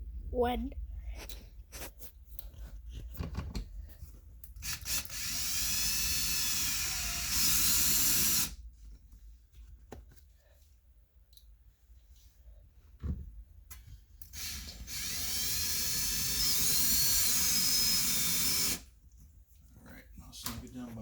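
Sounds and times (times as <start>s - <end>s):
power drill whining: 4.6s - 8.6s, 14.3s - 18.9s.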